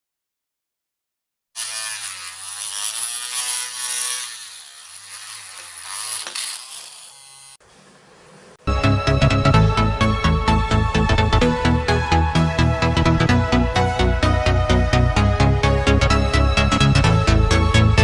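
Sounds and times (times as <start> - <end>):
drill motor buzzing whine: 1.6 - 7.6.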